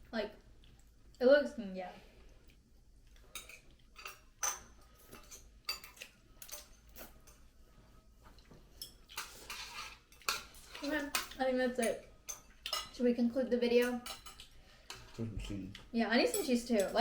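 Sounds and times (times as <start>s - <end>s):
utensils clinking against dishes: 3.3s - 7.5s, 8.7s - 13.0s, 13.7s - 17.0s.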